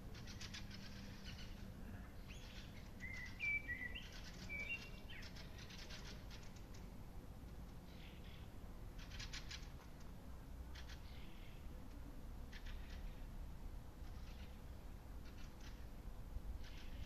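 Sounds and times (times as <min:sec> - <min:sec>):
bird whistling song: 0:02.3 - 0:06.1
rapid ticking bird trills: 0:07.9 - 0:10.1, 0:10.7 - 0:11.6.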